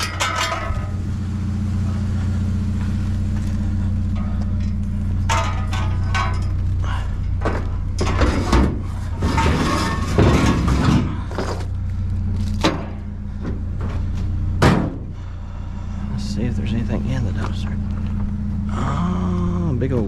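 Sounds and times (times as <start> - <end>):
knocks and clattering: 0.0 - 1.0, 3.5 - 11.8, 12.4 - 15.2
truck engine running: 0.0 - 20.0.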